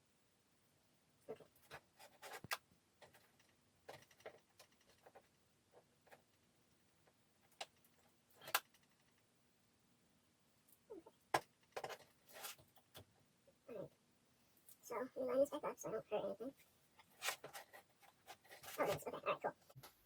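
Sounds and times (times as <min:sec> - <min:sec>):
hands handling parts and cables: 0:01.3 - 0:09.3, 0:10.6 - 0:13.3, 0:16.6 - 0:19.0.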